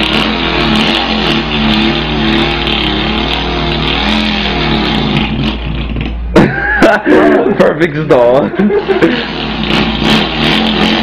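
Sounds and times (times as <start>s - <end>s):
man imitating car engine: 6.4s - 11.0s.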